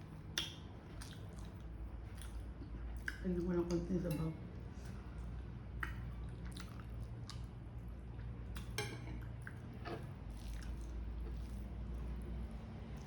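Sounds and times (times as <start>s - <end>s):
person chewing: 0.3s - 3.2s, 4.9s - 13.0s
wet mouth clicks and smacks: 0.3s - 3.2s.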